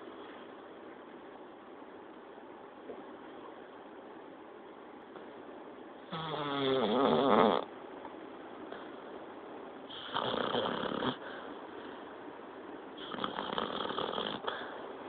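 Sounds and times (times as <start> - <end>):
dog snoring: 6.0 - 7.7, 9.9 - 11.2, 13.0 - 14.7.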